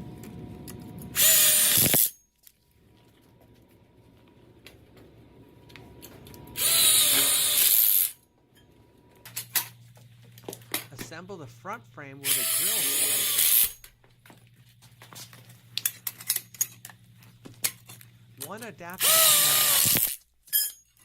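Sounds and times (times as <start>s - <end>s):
power drill whining: 1.2s - 2.1s, 6.5s - 8.2s, 12.2s - 13.8s, 19.0s - 20.2s.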